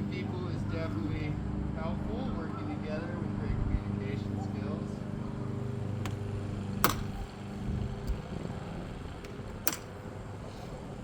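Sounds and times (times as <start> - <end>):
steady low hum: 0.0 - 11.0
clicks and knocks of frame tubes: 6.0 - 7.3, 9.2 - 10.1.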